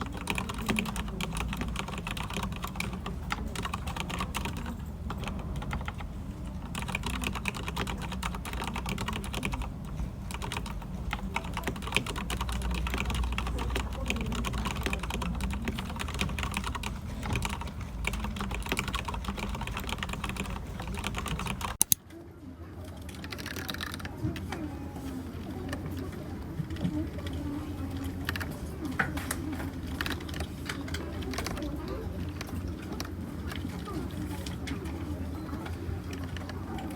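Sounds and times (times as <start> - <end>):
typing on mechanical keyboard: 0.0 - 22.0, 23.0 - 24.6, 25.6 - 34.9
sharp clicks: 14.4 - 22.0.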